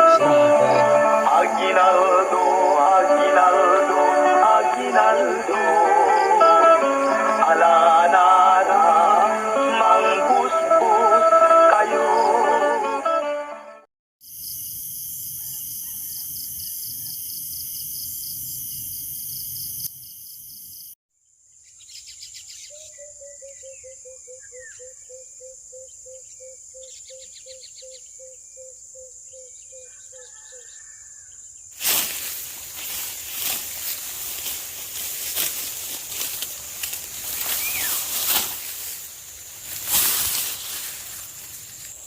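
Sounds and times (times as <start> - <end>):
animal piping note: 0.0 - 1.6
insects trilling: 0.0 - 12.8, 14.2 - 21.0, 21.6 - 42.0
bird chirps: 21.6 - 31.5, 37.3 - 38.1
rustling or wind noise: 31.8 - 42.0.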